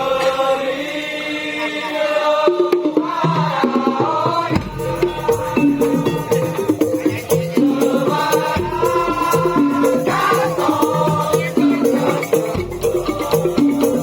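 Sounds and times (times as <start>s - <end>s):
pitched percussion pattern: 0.0s - 14.0s
rattling and clicking percussion: 4.3s - 14.0s.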